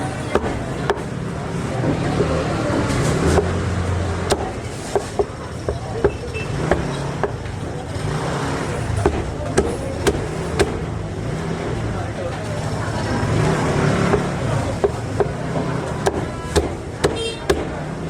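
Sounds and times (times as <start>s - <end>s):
cleaver chopping on wooden block: 0.3s - 1.1s, 2.9s - 3.6s, 4.2s - 7.5s, 9.0s - 10.9s, 14.0s - 17.8s.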